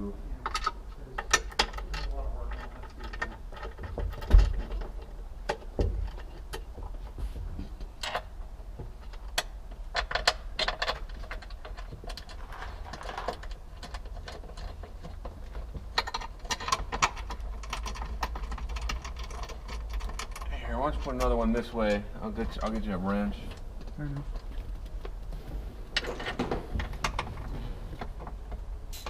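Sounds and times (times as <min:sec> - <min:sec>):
steady low hum: 0:00.0 - 0:29.0
hand tools clicking and rattling: 0:00.4 - 0:06.9, 0:09.0 - 0:25.3.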